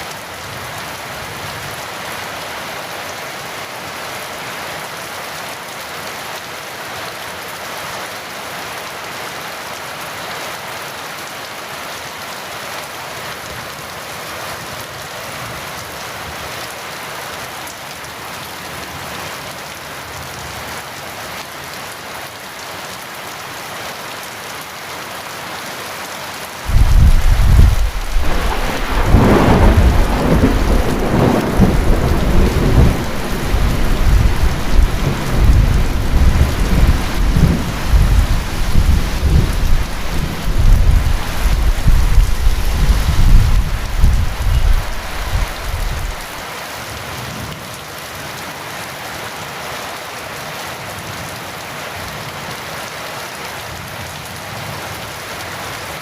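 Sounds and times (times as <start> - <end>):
heavy rain: 0.0 - 56.0
thunder rumbling: 26.7 - 46.3.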